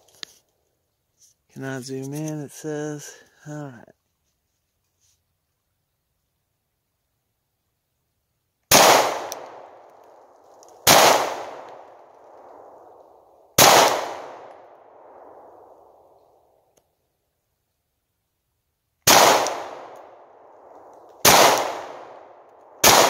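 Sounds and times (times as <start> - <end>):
pistol shots with echo: 8.7 - 9.8, 10.8 - 12.9, 13.6 - 15.8, 19.1 - 20.2, 21.2 - 23.0.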